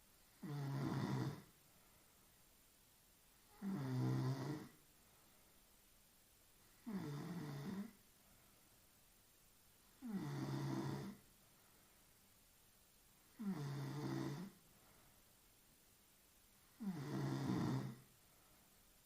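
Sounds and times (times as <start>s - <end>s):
quiet breathing: 0.0s - 19.0s
woman snoring: 0.3s - 1.5s, 3.5s - 4.8s, 6.8s - 8.0s, 10.0s - 11.2s, 13.3s - 14.6s, 16.7s - 18.0s.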